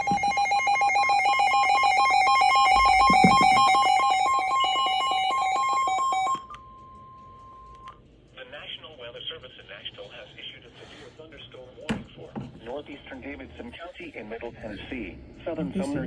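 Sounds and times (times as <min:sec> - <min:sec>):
two-pitch electronic alarm warble: 0:00.0 - 0:07.8.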